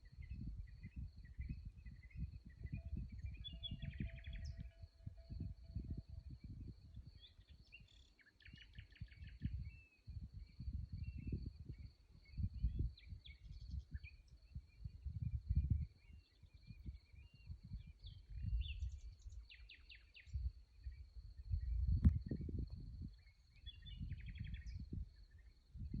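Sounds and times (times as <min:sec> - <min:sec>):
short chirps of birds and insects: 0:00.1 - 0:25.9.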